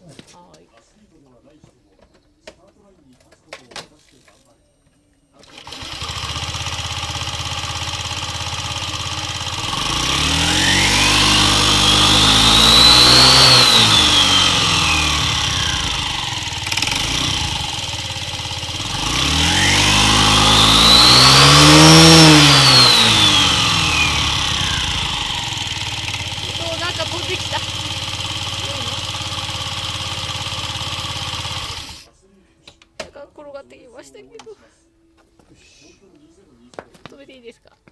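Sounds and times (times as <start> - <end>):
belt drive whine: 5.4 - 32.1
scooter engine revving: 5.4 - 32.1.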